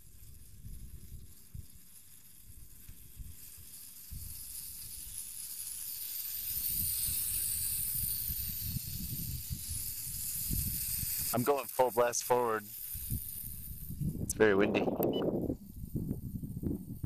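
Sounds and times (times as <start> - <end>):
quadcopter motors hissing: 0.0 - 17.0
wind buffeting microphone: 6.4 - 11.4, 12.8 - 17.0.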